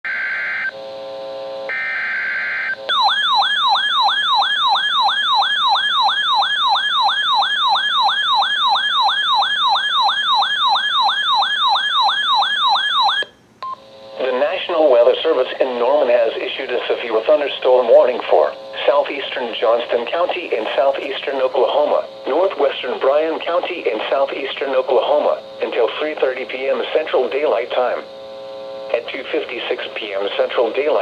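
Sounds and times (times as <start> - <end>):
electronic siren whoops: 0.1 - 0.7, 1.7 - 13.3
harsh buzzing data bursts: 0.1 - 3.9, 13.8 - 31.0.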